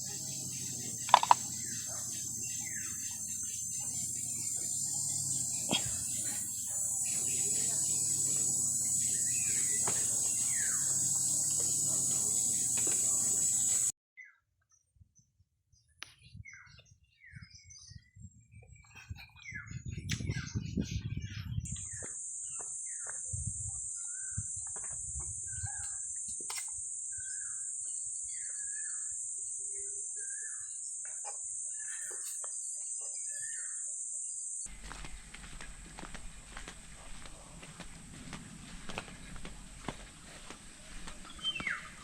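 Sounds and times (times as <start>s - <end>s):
steady high-pitched buzz: 0.0s - 13.9s, 34.4s - 42.0s
small birds chirping: 0.0s - 14.4s, 15.8s - 42.0s.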